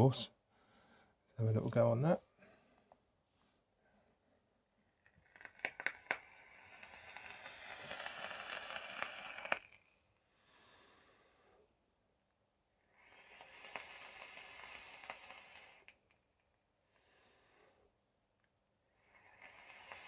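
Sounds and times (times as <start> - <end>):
vape coils sizzling and crackling: 5.0 - 10.0, 12.9 - 16.5, 19.0 - 20.0
breathy exhale: 10.4 - 11.7, 12.9 - 15.9, 16.9 - 17.9.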